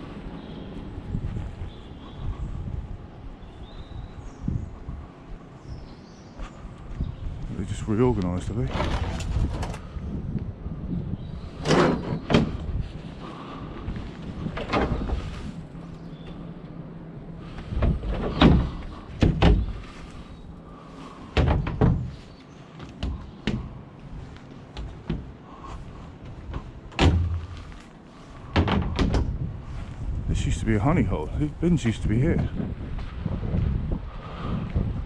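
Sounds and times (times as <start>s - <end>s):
low background rumble: 0.0s - 35.0s
knocks and thumps: 17.8s - 19.8s, 21.3s - 22.2s, 22.8s - 23.8s, 24.8s - 25.4s, 26.2s - 27.8s, 28.5s - 29.4s.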